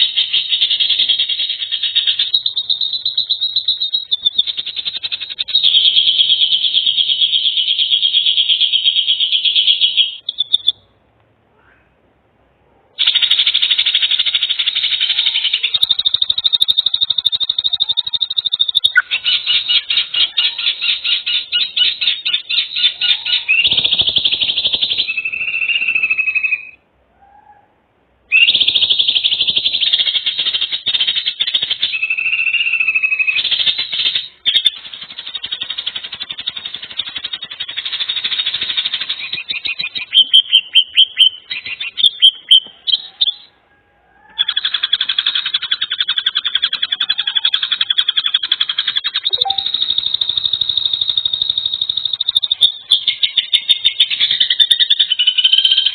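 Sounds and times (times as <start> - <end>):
pulsing animal trills: 0.0 - 10.8, 13.0 - 26.7, 44.3 - 55.9.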